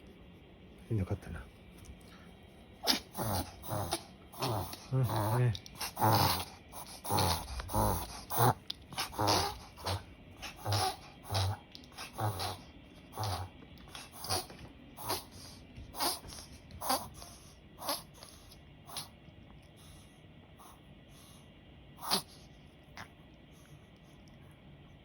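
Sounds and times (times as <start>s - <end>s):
dog reverse sneezing: 2.8s - 4.9s, 8.0s - 19.1s.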